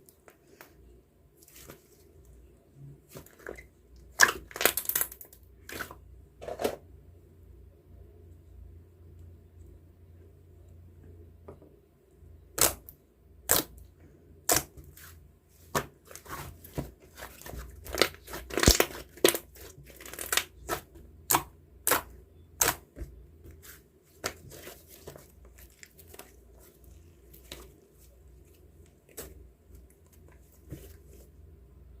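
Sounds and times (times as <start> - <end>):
tearing and crinkling crackles: 16.0 - 20.9.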